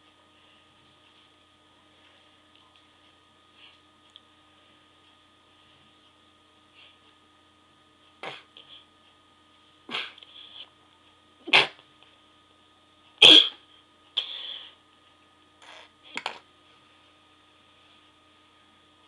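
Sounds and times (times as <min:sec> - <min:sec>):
person sneezing: 0:09.9 - 0:10.2, 0:13.2 - 0:13.6.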